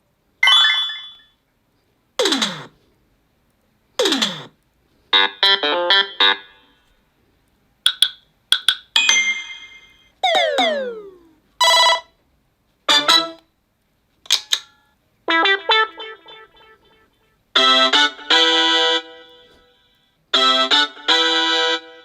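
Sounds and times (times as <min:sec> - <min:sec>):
phone ringtone sounds: 0:00.4 - 0:01.3, 0:09.0 - 0:12.0.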